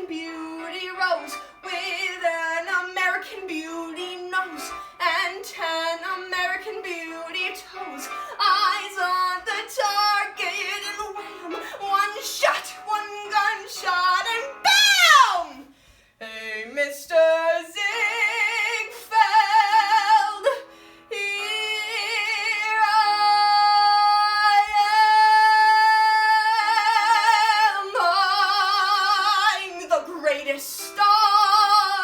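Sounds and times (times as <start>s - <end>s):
woman belting a show tune: 7.8s - 15.7s.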